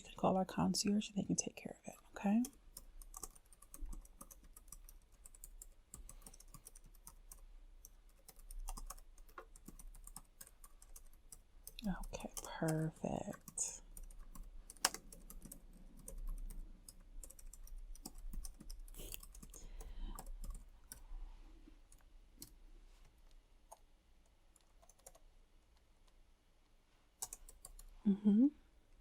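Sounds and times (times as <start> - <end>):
keyboard typing clicks: 2.4 - 21.0, 24.6 - 25.2, 27.2 - 27.9.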